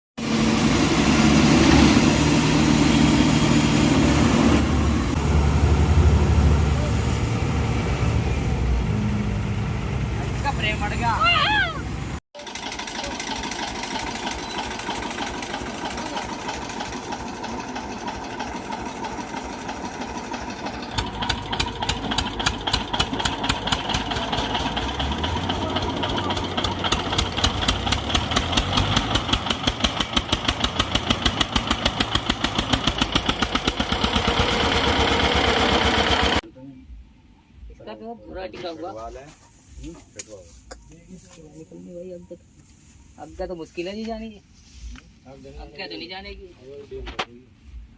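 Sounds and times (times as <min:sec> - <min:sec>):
diesel tractor engine chugging: 0:11.8 - 0:36.4.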